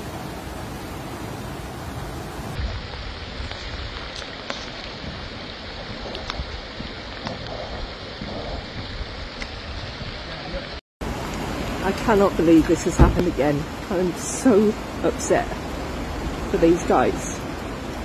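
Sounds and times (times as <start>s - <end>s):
wind on microphone: 0.0s - 10.8s
floodwater rushing: 0.0s - 18.0s.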